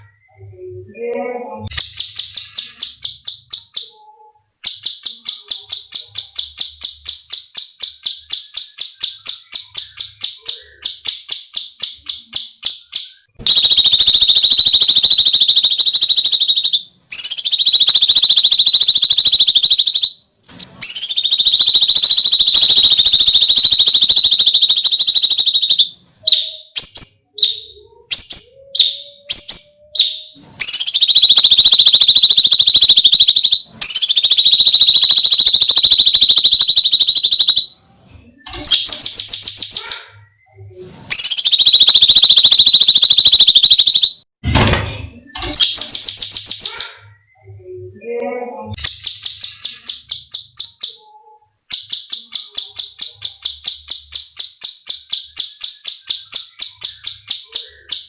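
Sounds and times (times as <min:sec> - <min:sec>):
songbird calling: 0:11.9 - 0:20.2, 0:20.8 - 0:37.7, 0:41.2 - 0:44.2
harsh bird screeching: 0:13.1 - 0:40.4, 0:41.1 - 0:44.2, 0:45.1 - 0:47.3.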